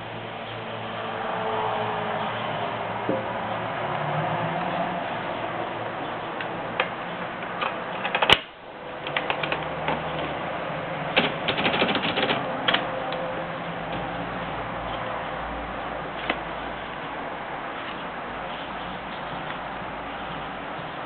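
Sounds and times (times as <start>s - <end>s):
typewriter keys striking: 11.2s - 12.9s.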